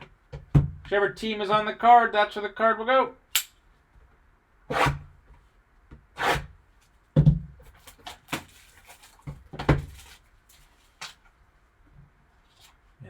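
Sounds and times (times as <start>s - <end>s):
cardboard box knocking on table: 7.2s - 7.5s.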